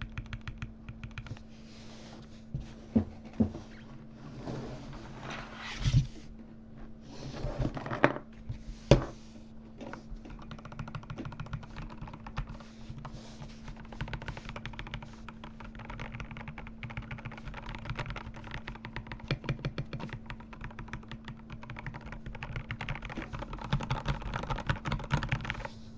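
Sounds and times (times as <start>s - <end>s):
typing on a keyboard: 0.0s - 1.4s, 10.3s - 12.6s, 13.7s - 25.7s
steady low hum: 0.0s - 25.9s.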